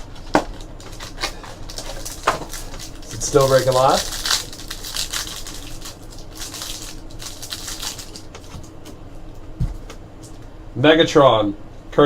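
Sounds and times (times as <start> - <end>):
card wrappers crinkling: 0.0 - 9.0
cards shuffling: 0.1 - 9.0.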